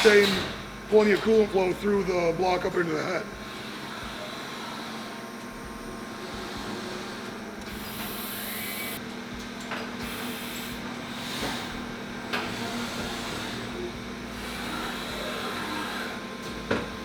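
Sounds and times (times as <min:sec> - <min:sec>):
machine milling with steady hum: 0:00.0 - 0:17.0.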